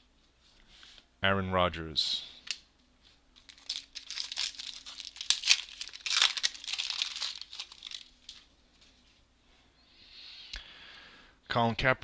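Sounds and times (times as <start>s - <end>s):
wrapper crinkling and tearing: 3.4s - 8.5s.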